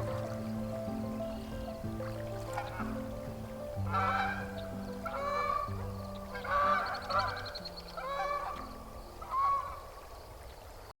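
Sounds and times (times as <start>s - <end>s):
geese honking: 0.0s - 10.0s.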